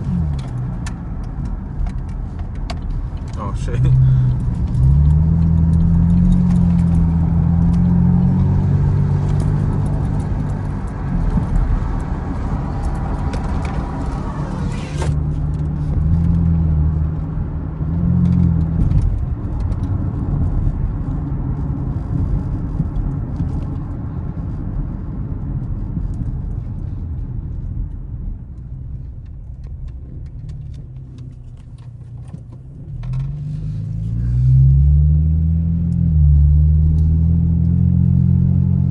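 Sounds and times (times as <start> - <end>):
car engine revving: 0.0 - 21.2, 32.2 - 38.9.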